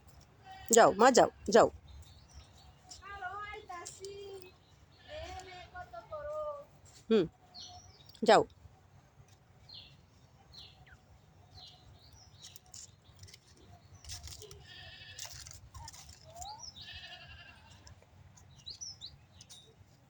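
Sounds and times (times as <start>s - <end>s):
birds chirping: 0.6s - 6.4s, 7.1s - 20.0s
goat bleating: 14.6s - 15.4s, 16.8s - 17.8s.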